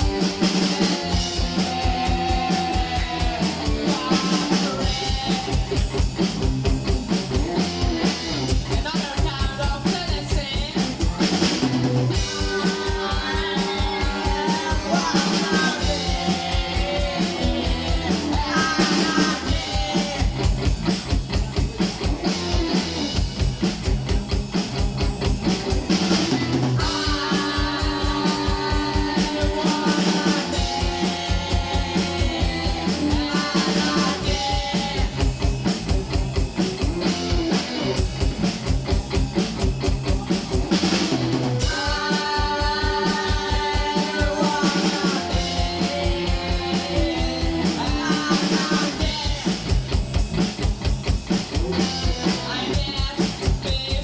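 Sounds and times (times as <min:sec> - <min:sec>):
person singing: 0:00.0 - 0:05.8, 0:08.6 - 0:20.7, 0:26.0 - 0:35.5, 0:40.0 - 0:49.9, 0:51.6 - 0:54.0
drum kit fast beat: 0:00.0 - 0:54.0
electric guitar: 0:00.0 - 0:54.0.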